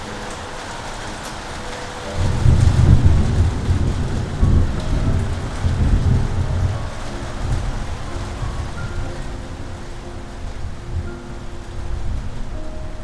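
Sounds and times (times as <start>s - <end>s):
steady rain: 0.0s - 13.0s
thunder rumbling: 0.0s - 13.0s.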